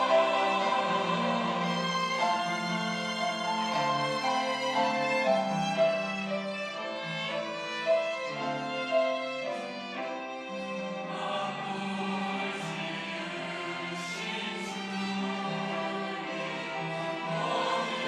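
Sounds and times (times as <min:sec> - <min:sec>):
instrumental accompaniment: 0:00.0 - 0:12.1
violin melody: 0:00.0 - 0:18.0.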